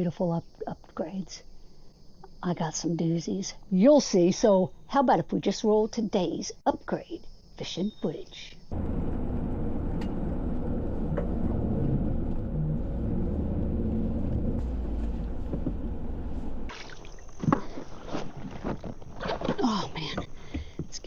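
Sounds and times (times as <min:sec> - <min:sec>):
knocks and clunks: 0:08.7 - 0:21.0
kayak hull dragged across ground: 0:10.3 - 0:19.9.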